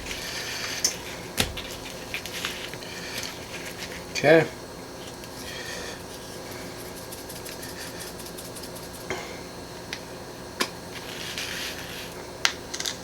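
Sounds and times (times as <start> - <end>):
seasoning shaker rattling: 0.0 - 4.2, 5.0 - 9.1
soft hiss of seasoning falling: 5.0 - 10.1, 10.9 - 12.3.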